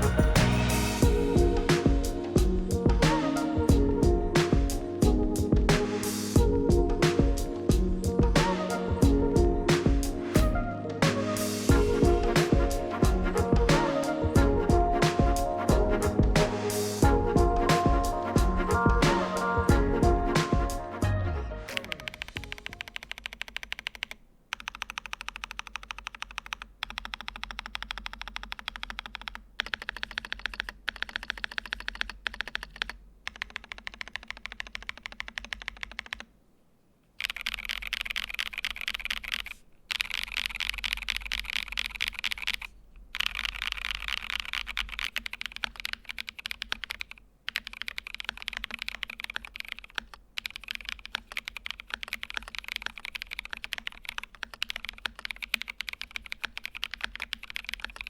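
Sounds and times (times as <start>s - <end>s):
typing on mechanical keyboard: 21.7s - 36.3s, 37.2s - 58.0s.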